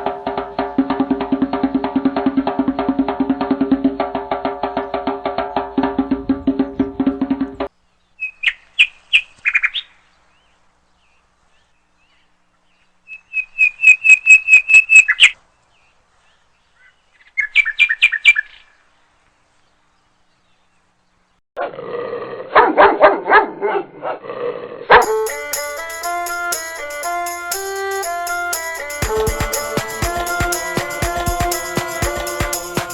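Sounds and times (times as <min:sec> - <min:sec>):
music: 0:00.0 - 0:07.7, 0:25.0 - 0:32.9.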